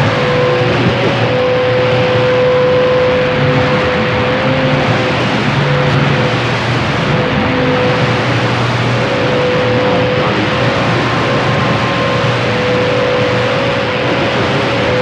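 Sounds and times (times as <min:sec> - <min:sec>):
radio static hiss: 0:04.8 - 0:15.0.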